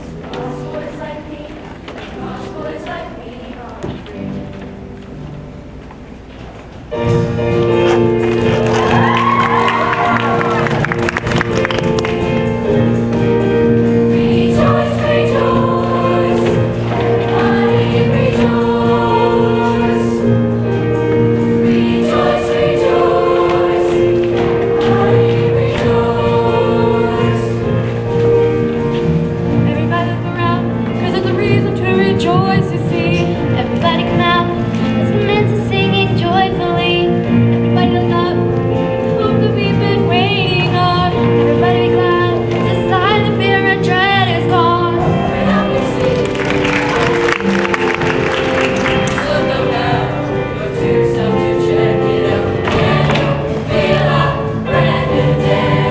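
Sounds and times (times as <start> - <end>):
choir singing: 0.0 - 4.6, 7.0 - 55.9
instrumental accompaniment chords: 6.9 - 55.9.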